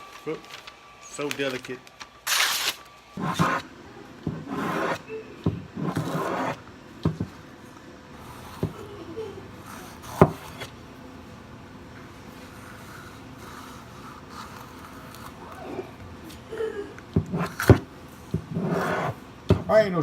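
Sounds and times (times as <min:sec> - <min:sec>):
cleaver slicing through paper: 0:02.2 - 0:03.6, 0:05.8 - 0:06.6.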